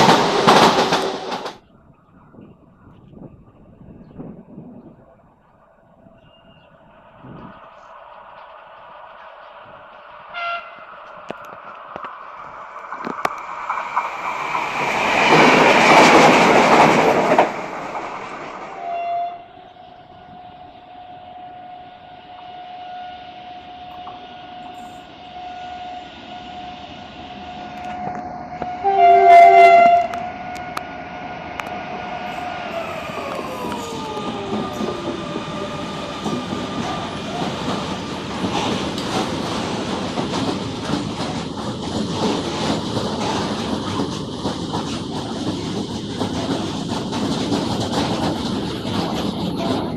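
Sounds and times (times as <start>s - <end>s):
train rushing past: 0.0s - 1.6s, 6.1s - 49.9s
train horn blast: 10.3s - 10.9s, 18.7s - 30.9s.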